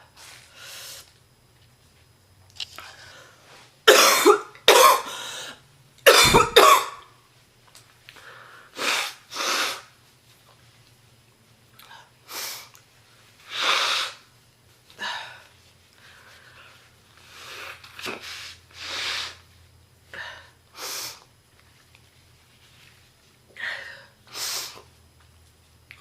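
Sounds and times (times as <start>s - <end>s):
woman coughing deeply: 3.9s - 5.2s, 6.0s - 7.1s.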